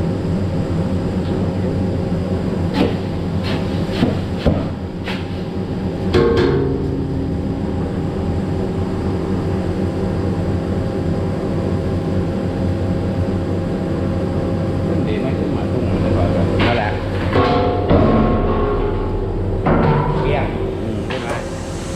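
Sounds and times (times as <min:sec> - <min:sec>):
sharp metallic clank: 0:06.1 - 0:08.1.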